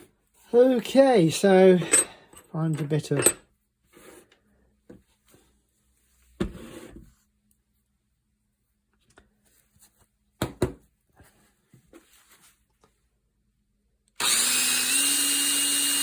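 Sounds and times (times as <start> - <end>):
objects clattering on a table: 10.4 - 10.9.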